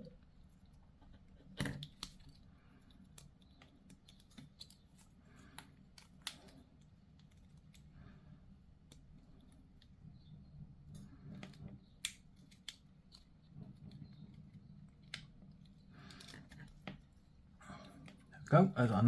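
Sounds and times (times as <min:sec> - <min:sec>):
plastic parts clicking and snapping: 0:01.0 - 0:07.9, 0:10.9 - 0:17.2.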